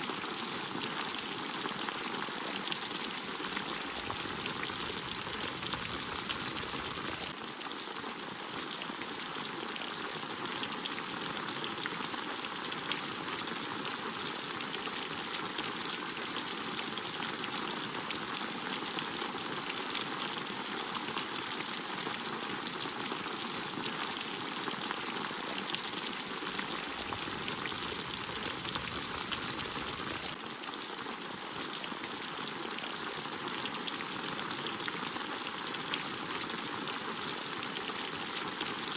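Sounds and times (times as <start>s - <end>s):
steady rain falling: 2.8s - 7.3s, 25.6s - 30.4s.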